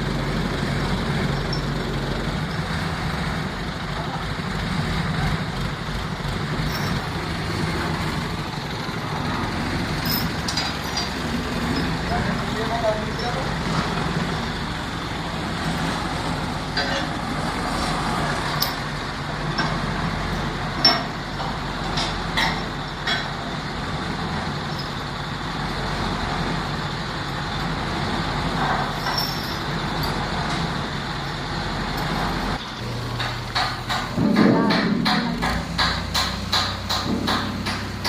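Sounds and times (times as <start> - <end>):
heavy machinery running: 0.0 - 38.0
sharp metallic knocks: 20.8 - 23.4, 32.6 - 38.0.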